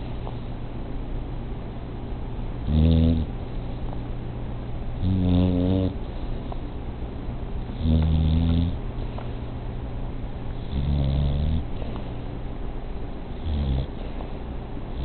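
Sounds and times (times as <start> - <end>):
pet snoring: 2.6 - 3.3, 5.0 - 6.0, 7.7 - 8.8, 10.6 - 11.9, 13.4 - 14.1
quiet breathing: 5.9 - 6.7, 10.6 - 12.4.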